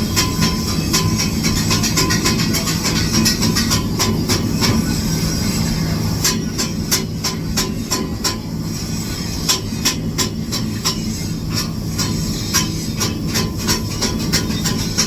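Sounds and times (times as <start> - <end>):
steady low hum: 0.0 - 15.0
welding arc crackling and popping: 5.9 - 15.0.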